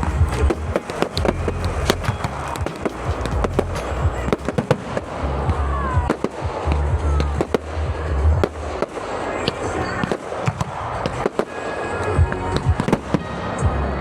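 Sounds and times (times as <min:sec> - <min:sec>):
fireworks whistles: 0:00.0 - 0:05.4, 0:08.4 - 0:13.6
fireworks bangs and cracks: 0:00.0 - 0:14.0.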